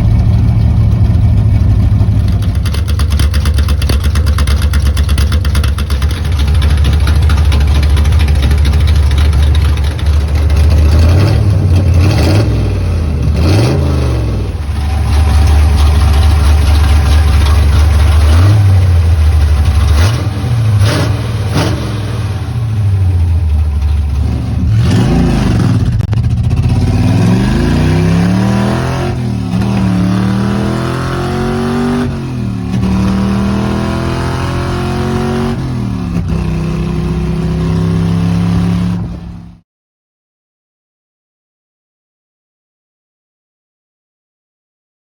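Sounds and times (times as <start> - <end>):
car engine revving: 0.0 - 39.6
sharp engine cracks: 2.0 - 12.0.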